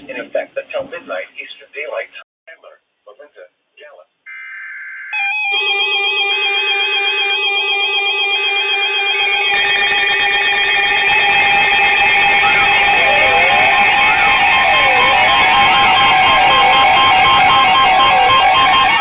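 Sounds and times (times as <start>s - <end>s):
electronic alarm tones: 4.3s - 19.0s
data-burst tone: 8.3s - 19.0s
harsh noisy wash: 9.5s - 19.0s.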